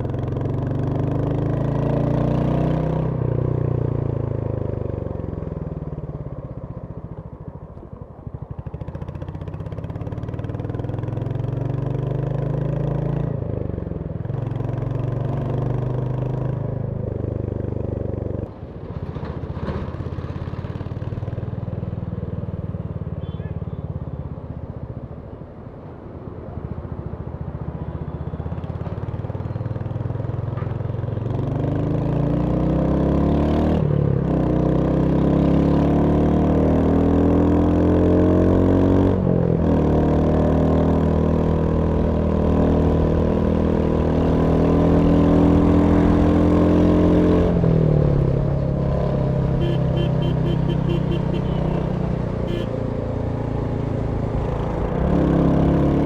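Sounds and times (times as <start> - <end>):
motorcycle engine accelerating: 31.2 - 56.0.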